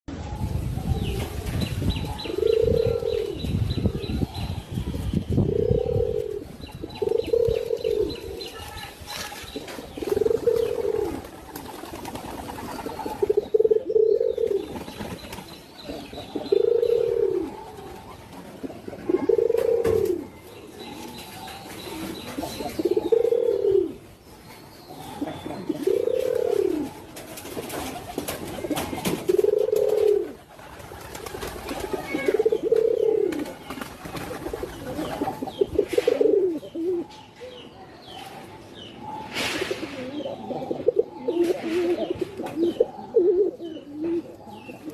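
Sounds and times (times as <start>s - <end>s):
pigeon cooing: 2.0s - 3.4s, 5.5s - 8.4s, 10.0s - 11.3s, 12.2s - 14.7s, 15.9s - 24.0s, 25.0s - 27.1s, 28.6s - 30.4s, 31.8s - 33.6s, 34.4s - 37.2s, 39.1s - 44.9s.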